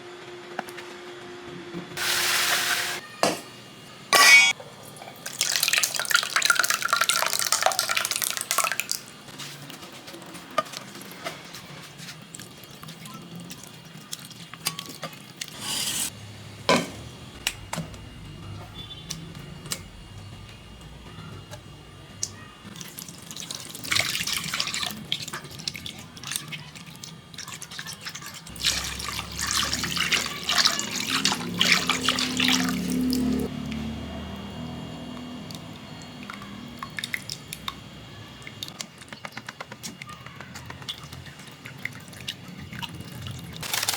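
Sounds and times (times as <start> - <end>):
liquid pouring and splashing: 5.1 - 15.6, 22.2 - 33.8, 35.5 - 37.8.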